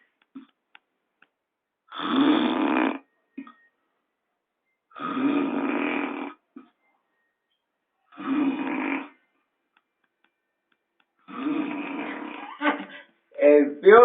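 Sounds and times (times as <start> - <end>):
person snoring heavily: 1.9 - 3.1, 4.9 - 6.4, 8.1 - 9.2, 11.2 - 12.6.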